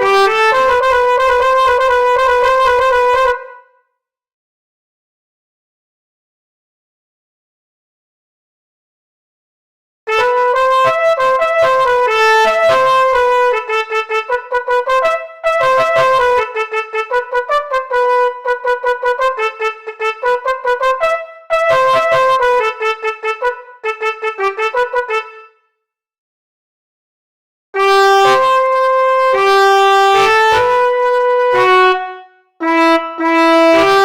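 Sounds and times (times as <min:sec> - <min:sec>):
brassy bus horn melody: 0:00.0 - 0:03.7, 0:10.1 - 0:25.6, 0:27.8 - 0:34.0.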